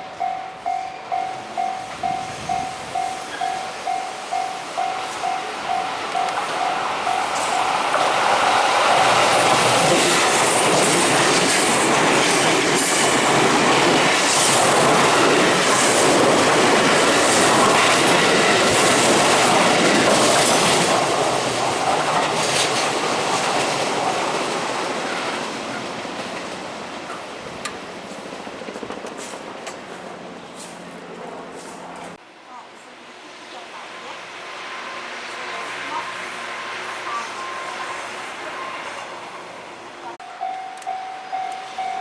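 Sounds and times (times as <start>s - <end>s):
level crossing warning bell: 0.0s - 9.2s, 34.9s - 42.0s
electric train passing: 0.0s - 42.0s
train wheels clattering over rail joints: 1.6s - 30.8s.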